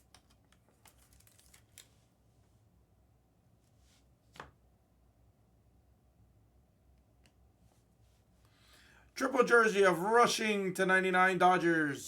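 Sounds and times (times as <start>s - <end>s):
trading cards rustling and clicking: 0.1s - 2.0s.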